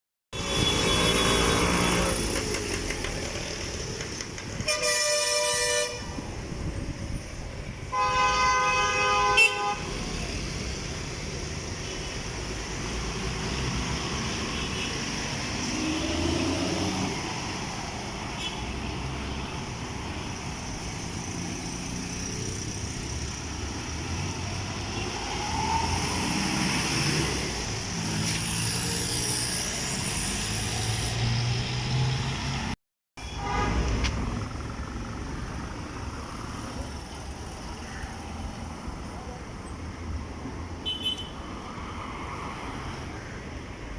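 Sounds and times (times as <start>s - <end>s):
street traffic passing: 0.3s - 43.9s
vehicle horn blasts: 4.6s - 6.2s, 7.9s - 9.8s, 33.2s - 33.9s.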